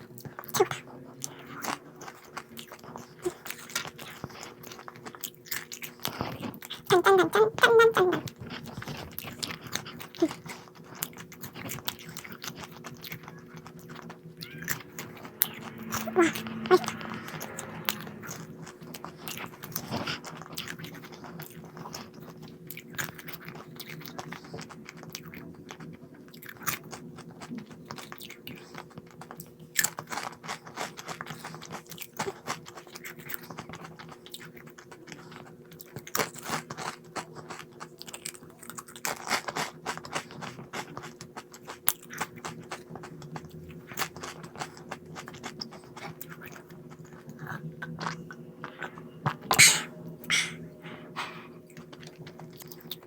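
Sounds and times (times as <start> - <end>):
crunchy snack being chewed: 0.0 - 50.6, 51.2 - 53.0
faint steady hum: 0.0 - 53.0.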